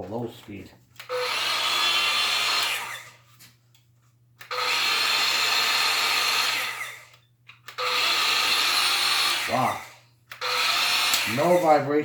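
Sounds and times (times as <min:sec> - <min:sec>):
circular saw running free: 0:01.1 - 0:03.2, 0:04.5 - 0:07.1, 0:07.8 - 0:11.9.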